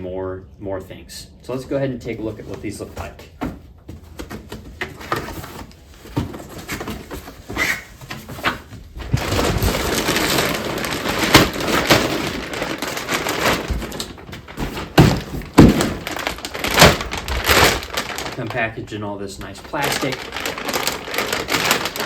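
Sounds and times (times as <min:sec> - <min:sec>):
plastic packaging crackling: 0:04.9 - 0:22.0.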